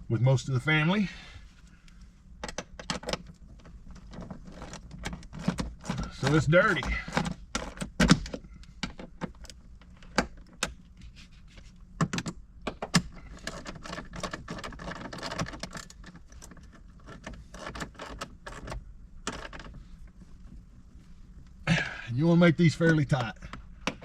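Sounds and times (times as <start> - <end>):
small parts and hand tool rattling: 2.5 - 10.8, 12.8 - 19.8.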